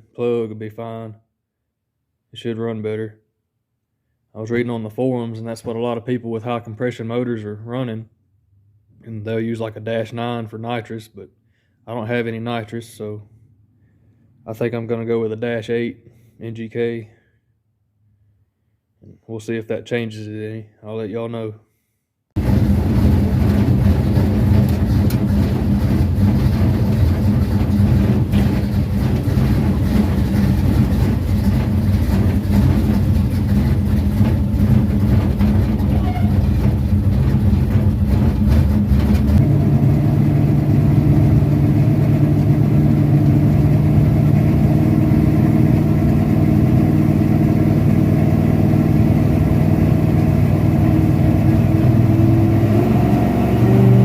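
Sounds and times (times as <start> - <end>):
race car engine droning: 22.4 - 54.0.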